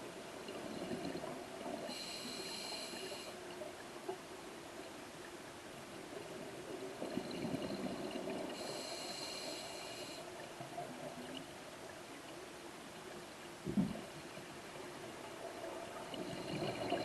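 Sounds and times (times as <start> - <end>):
hissing inhalation through regulator: 1.9 - 3.4, 8.5 - 10.3.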